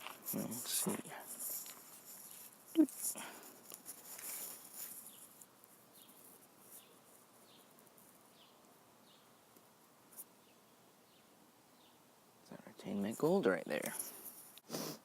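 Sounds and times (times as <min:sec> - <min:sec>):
crackly rustling: 0:00.0 - 0:10.4, 0:12.9 - 0:14.7
small bird chirping: 0:04.7 - 0:12.0.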